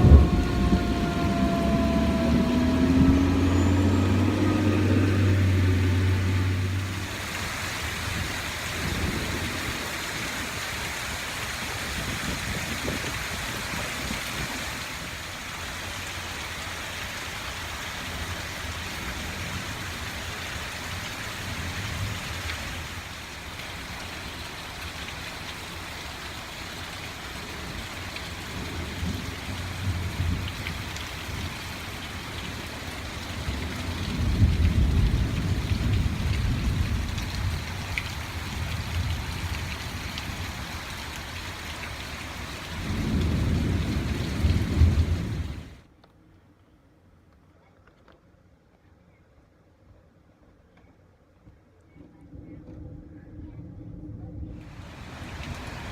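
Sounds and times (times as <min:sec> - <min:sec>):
low rumble: 0:00.0 - 0:07.3, 0:51.9 - 0:55.9
rising hum: 0:00.0 - 0:07.3
heavy rain pouring: 0:00.0 - 0:45.9, 0:54.5 - 0:55.9.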